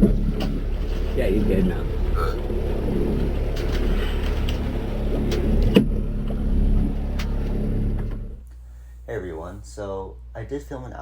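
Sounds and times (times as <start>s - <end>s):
boat engine droning: 0.0s - 8.4s.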